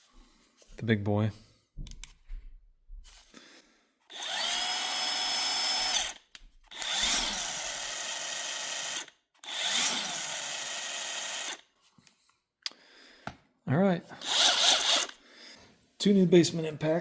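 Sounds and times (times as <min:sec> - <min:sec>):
cordless impact wrench: 0:04.1 - 0:11.7, 0:14.2 - 0:15.2.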